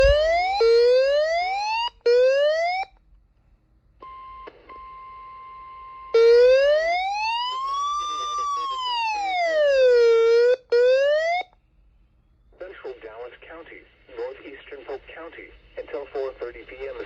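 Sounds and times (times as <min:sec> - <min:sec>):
electronic siren whooping: 0:00.0 - 0:02.9, 0:06.1 - 0:11.5
slow rising siren wail: 0:00.0 - 0:02.9, 0:06.1 - 0:11.5.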